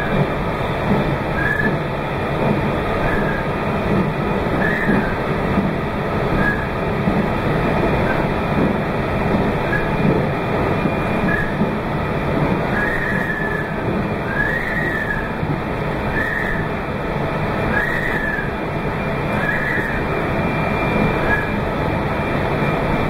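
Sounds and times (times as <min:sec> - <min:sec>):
train wheels rumbling on rails: 0:00.0 - 0:23.0
high-pitched wheel squeals: 0:06.4 - 0:06.7, 0:12.7 - 0:13.7, 0:14.3 - 0:15.3, 0:16.1 - 0:16.7, 0:17.7 - 0:18.6, 0:19.4 - 0:20.0, 0:21.2 - 0:21.6.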